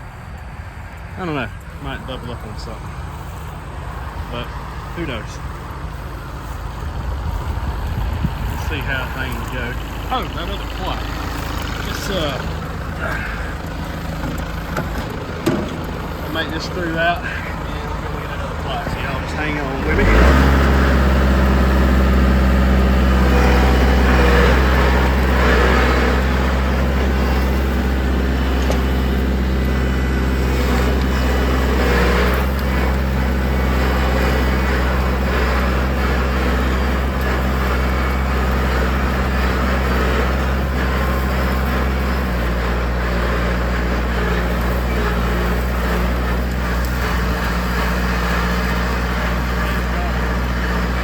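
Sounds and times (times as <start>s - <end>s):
tractor engine running under load: 0.0s - 51.0s.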